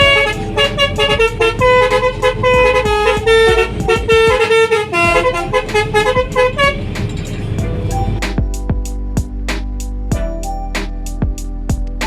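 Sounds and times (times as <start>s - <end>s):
multi-tone air horn melody: 0.0s - 7.0s.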